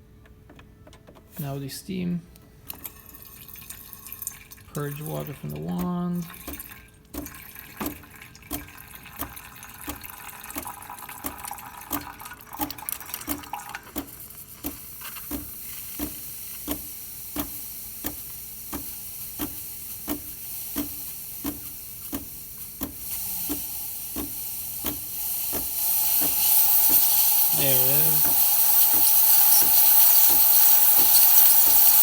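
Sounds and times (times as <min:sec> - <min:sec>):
espresso machine pump clicking: 0:05.2 - 0:32.0
steam hiss: 0:14.6 - 0:32.0
steam wand splashing hiss: 0:14.6 - 0:32.0.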